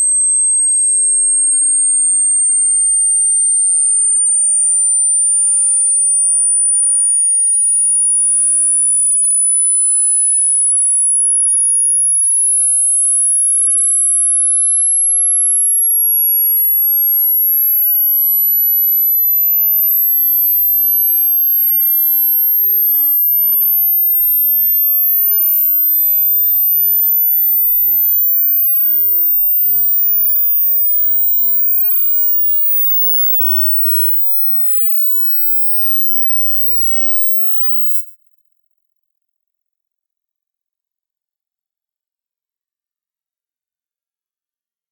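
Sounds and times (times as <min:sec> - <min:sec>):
high-pitched electronic tone rising: 0:03.4 - 0:05.1, 0:18.8 - 0:38.1.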